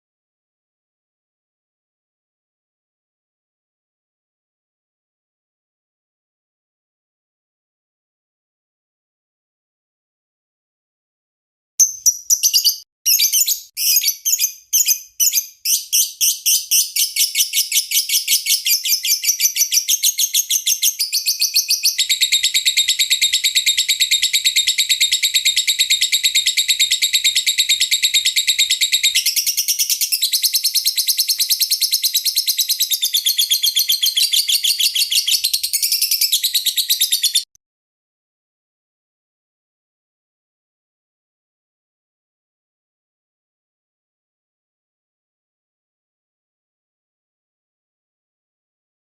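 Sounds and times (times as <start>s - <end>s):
lovebird chirping and trilling: 11.8s - 37.5s.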